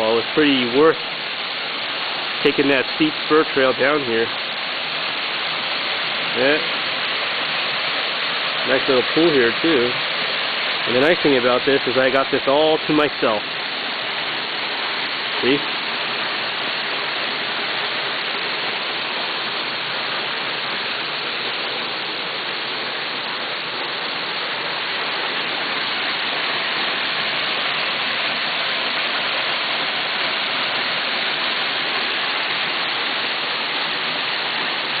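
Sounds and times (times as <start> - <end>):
waterfall crashing: 0.0 - 35.0.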